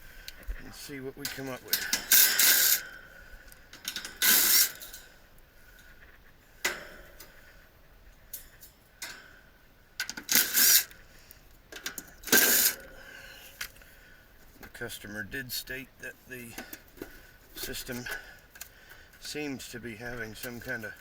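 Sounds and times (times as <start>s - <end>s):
mechanical rattles and clicks: 0.3s - 5.1s, 10.0s - 11.0s, 11.6s - 14.8s.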